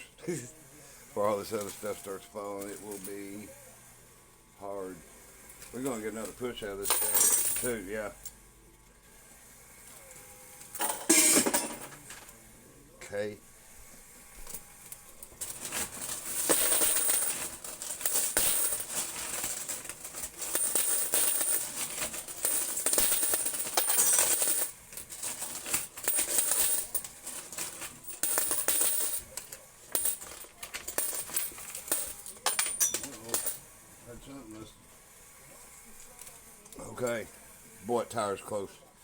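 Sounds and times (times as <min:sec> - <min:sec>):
coins clinking in arcade machine: 0:01.2 - 0:03.5, 0:05.5 - 0:08.4, 0:10.6 - 0:12.3, 0:14.4 - 0:33.7.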